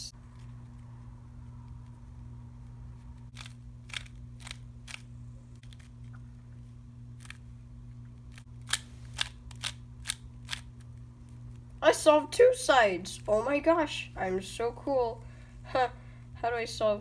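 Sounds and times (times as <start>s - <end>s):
steady low hum: 0.0s - 17.0s
puzzle cube plastic clicks: 3.3s - 5.9s, 8.3s - 10.7s.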